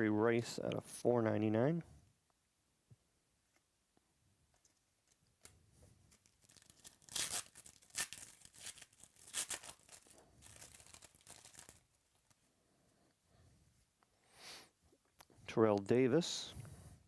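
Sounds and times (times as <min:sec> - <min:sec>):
wrapper tearing and crinkling: 0:06.1 - 0:12.4.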